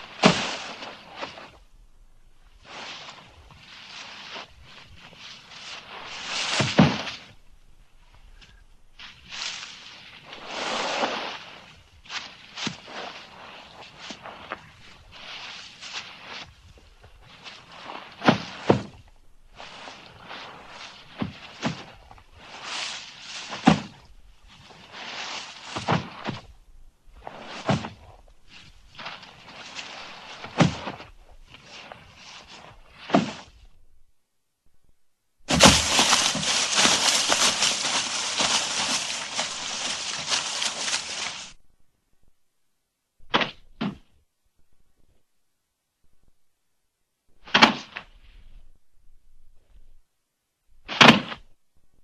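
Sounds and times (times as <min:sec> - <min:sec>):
body tumbling and scraping: 0:00.0 - 0:01.6, 0:02.6 - 0:07.4, 0:35.5 - 0:41.6
rustling and scuffing: 0:00.0 - 0:01.6, 0:02.6 - 0:07.5, 0:08.1 - 0:26.5, 0:27.2 - 0:33.8, 0:35.5 - 0:41.6
body hitting the floor: 0:35.5 - 0:41.5
short thuds: 0:35.5 - 0:41.5.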